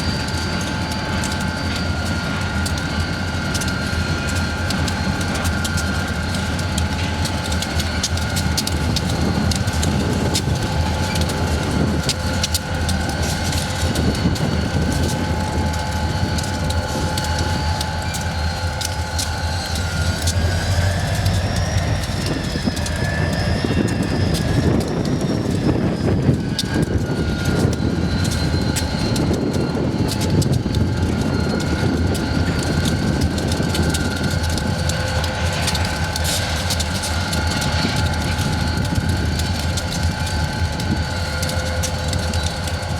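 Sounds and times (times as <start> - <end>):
freight train rumbling: 0.0 - 42.9
high whining tones: 13.1 - 33.3.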